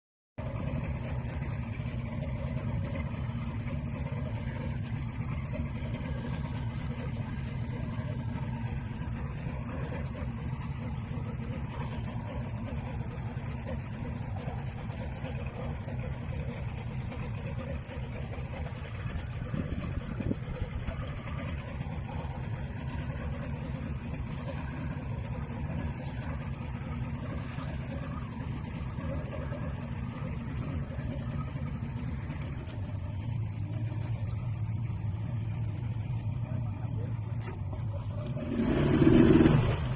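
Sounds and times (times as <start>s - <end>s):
boat engine humming: 0.4s - 39.9s.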